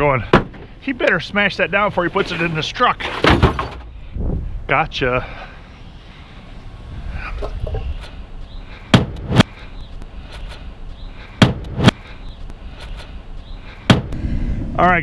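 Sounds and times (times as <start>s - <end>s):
wind rumble on microphone: 4.0s - 4.7s, 14.1s - 15.0s.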